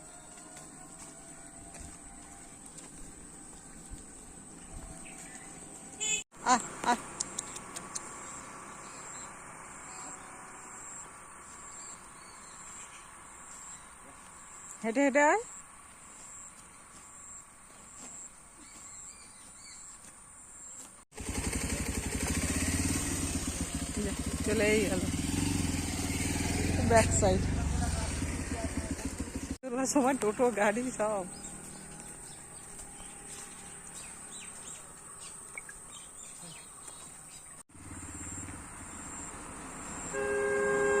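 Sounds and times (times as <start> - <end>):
vehicle engine running: 6.4 - 12.4, 21.1 - 34.8, 37.7 - 41.0.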